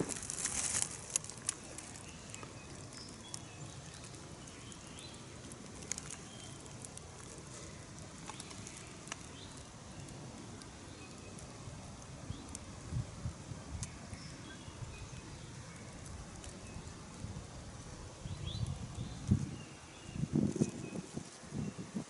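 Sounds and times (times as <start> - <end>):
small ticks: 0.1 - 12.7, 13.7 - 14.4, 15.1 - 17.3.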